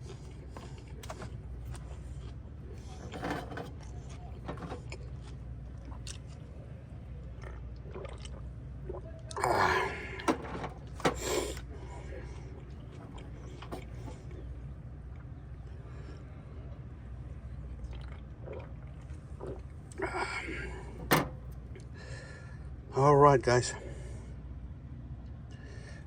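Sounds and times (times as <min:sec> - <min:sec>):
chewing: 0:00.0 - 0:10.3, 0:11.2 - 0:16.2, 0:17.7 - 0:20.1
steady low hum: 0:00.0 - 0:26.0.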